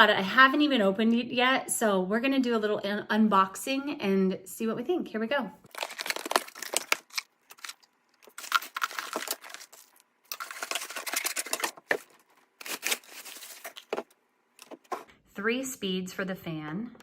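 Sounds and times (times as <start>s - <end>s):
packaging tearing and crinkling: 5.7s - 14.8s.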